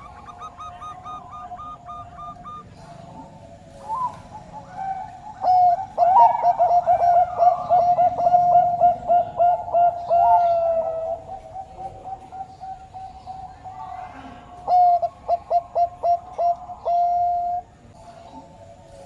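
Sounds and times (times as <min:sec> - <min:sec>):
faint high chirps: 0:00.0 - 0:05.5
dove cooing: 0:00.0 - 0:19.0.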